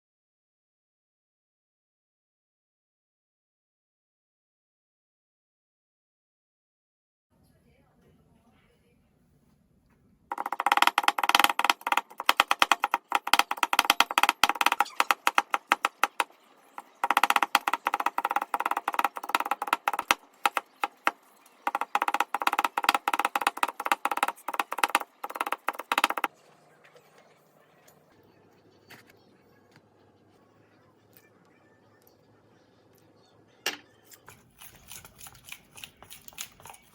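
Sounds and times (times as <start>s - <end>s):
knife chopping on wooden board: 10.3s - 26.3s.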